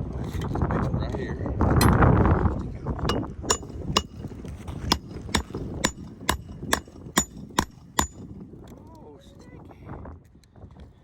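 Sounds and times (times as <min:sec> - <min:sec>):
hammer blows ringing metallically: 0:03.1 - 0:04.2, 0:04.9 - 0:08.2.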